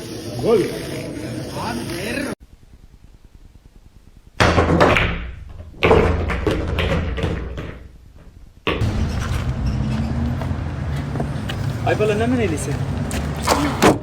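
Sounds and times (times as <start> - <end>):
loud bangs and knocks: 8.7 - 10.6.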